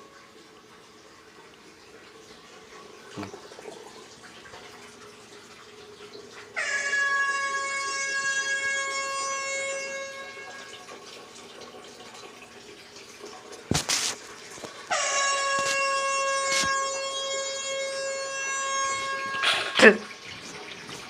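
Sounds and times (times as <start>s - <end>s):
air horn blast: 6.6s - 10.9s, 14.8s - 20.2s.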